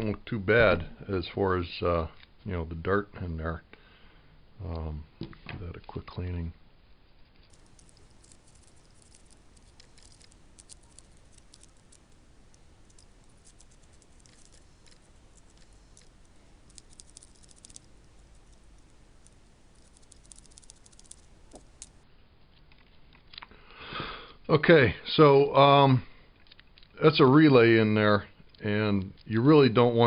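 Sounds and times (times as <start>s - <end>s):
small metal parts clicking: 7.4s - 22.0s.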